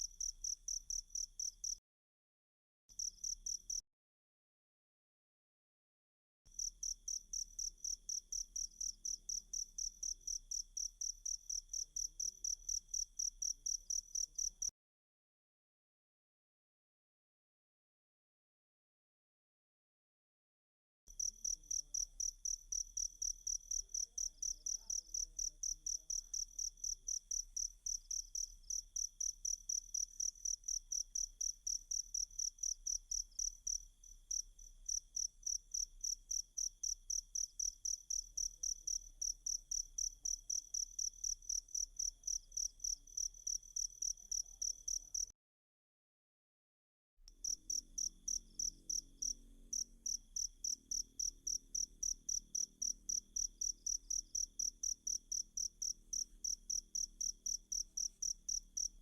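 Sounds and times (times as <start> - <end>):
cricket chirping: 0.0 - 1.8, 3.0 - 3.8, 6.5 - 14.7, 21.1 - 45.3, 47.4 - 59.0.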